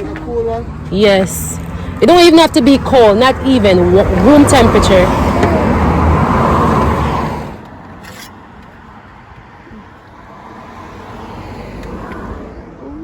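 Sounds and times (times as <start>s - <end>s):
road traffic rumble: 0.0s - 13.0s
vehicle approaching: 0.0s - 13.0s.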